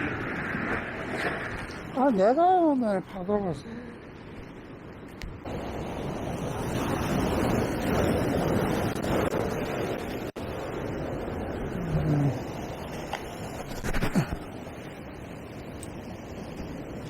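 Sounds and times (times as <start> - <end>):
surf breaking over rocks: 5.5 - 15.2.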